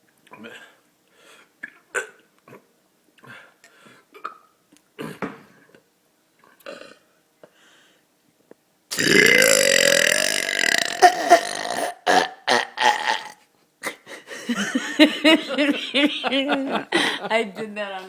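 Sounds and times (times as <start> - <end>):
person belching: 8.9 - 13.4.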